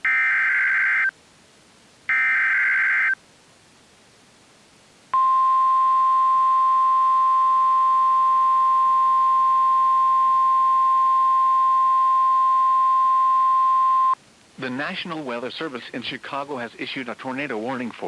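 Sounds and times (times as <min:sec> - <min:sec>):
faint radio hiss: 0:00.0 - 0:18.0
steady warning alarm beep: 0:02.1 - 0:03.2, 0:05.2 - 0:14.2.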